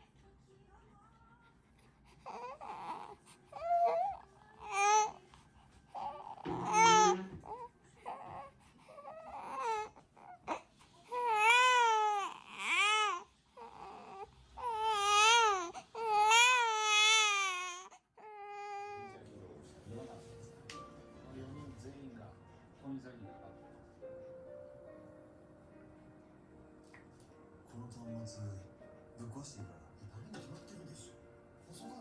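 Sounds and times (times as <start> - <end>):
infant crying: 2.2 - 5.2, 6.0 - 19.2.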